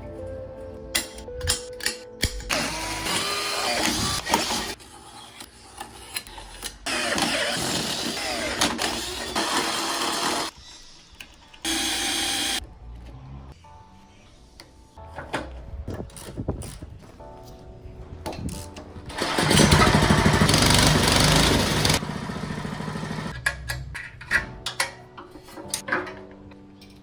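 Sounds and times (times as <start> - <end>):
background music: 0.0 - 4.8, 12.6 - 22.0, 23.2 - 27.0
workshop tool noise: 1.0 - 12.6, 18.4 - 26.2.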